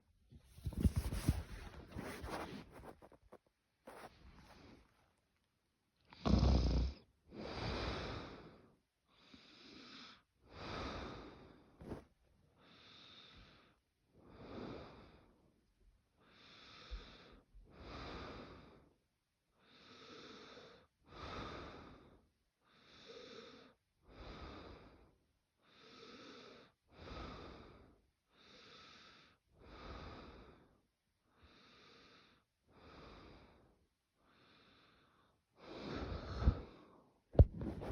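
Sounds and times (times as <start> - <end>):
quiet snoring: 6.1 - 8.3.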